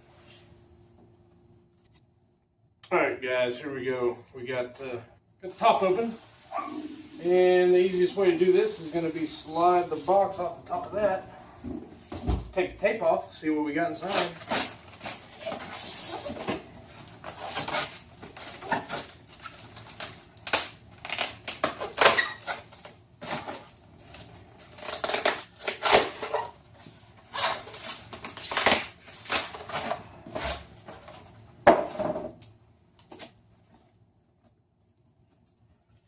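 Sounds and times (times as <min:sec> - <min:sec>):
packaging rustling and crinkling: 0:14.0 - 0:31.4.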